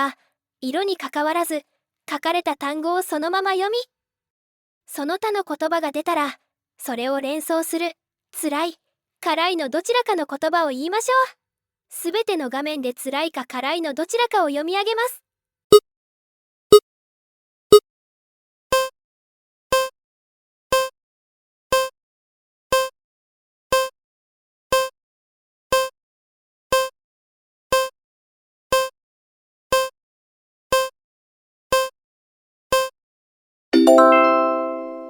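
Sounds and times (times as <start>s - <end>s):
electronic metronome ticks: 18.7s - 18.9s, 19.7s - 19.9s, 20.7s - 20.9s, 21.7s - 21.9s, 22.7s - 22.9s, 23.7s - 23.9s, 24.7s - 24.9s, 25.7s - 25.9s, 26.7s - 26.9s, 27.7s - 27.9s, 28.7s - 28.9s, 29.7s - 29.9s, 30.7s - 30.9s, 31.7s - 31.9s, 32.7s - 32.9s
piano chord: 33.8s - 35.0s.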